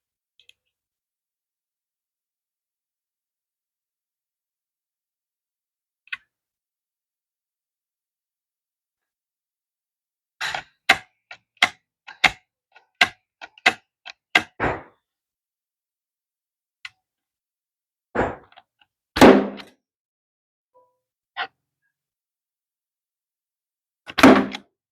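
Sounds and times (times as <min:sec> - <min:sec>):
wooden pieces knocking and clicking: 0:10.4 - 0:14.6
loud wooden thuds: 0:14.4 - 0:14.9.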